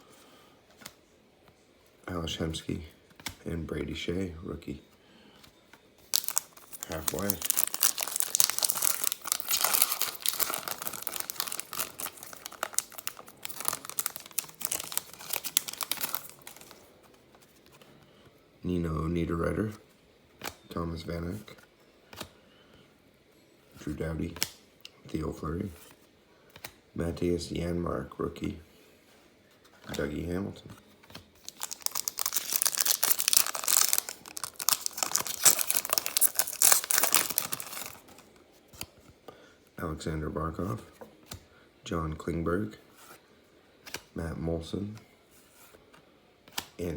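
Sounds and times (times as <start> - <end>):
foil wrapper tearing and crinkling: 6.0 - 16.8, 31.4 - 38.2.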